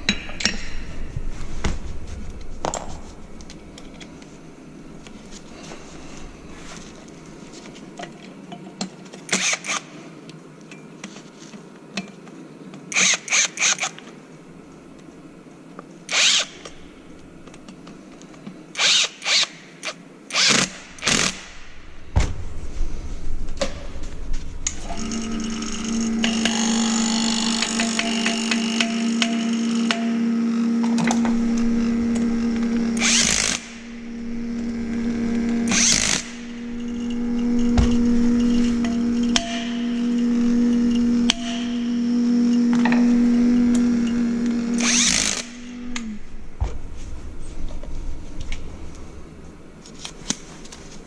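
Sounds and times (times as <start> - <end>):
mechanical hum with low tone: 0.0 - 51.0
power tool bursts: 16.1 - 16.7, 20.3 - 21.6, 24.8 - 46.2.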